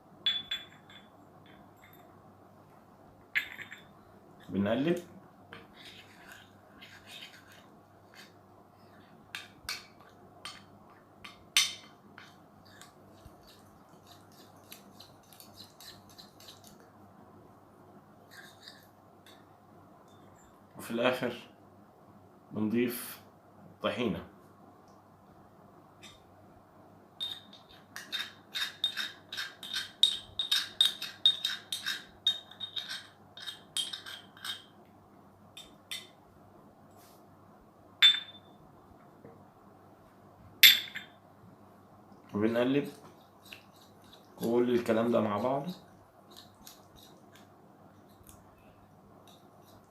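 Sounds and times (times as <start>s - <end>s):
spoon clinking on container: 0.3s - 1.2s, 27.2s - 34.7s
spoon stirring paste: 5.6s - 8.4s, 12.2s - 16.8s, 27.2s - 34.6s, 43.0s - 48.4s.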